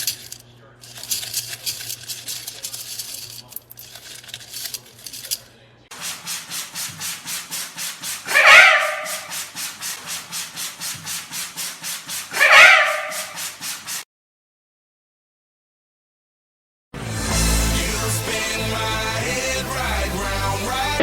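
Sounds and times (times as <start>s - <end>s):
rhythmic scraping: 0.0s - 14.0s, 17.0s - 21.0s
parrot squawk: 8.2s - 9.4s, 12.3s - 13.4s.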